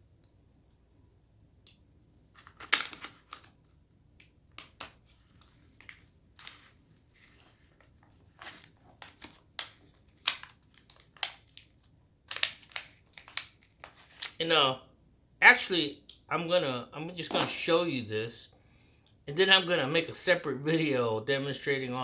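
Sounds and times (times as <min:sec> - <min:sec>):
plastic packaging crackling and snapping: 0:01.7 - 0:14.4.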